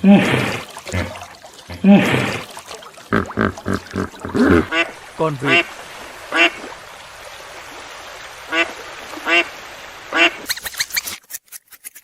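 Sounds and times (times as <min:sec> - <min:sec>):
duck quacking: 0:03.1 - 0:05.7, 0:06.3 - 0:06.6, 0:10.1 - 0:10.4.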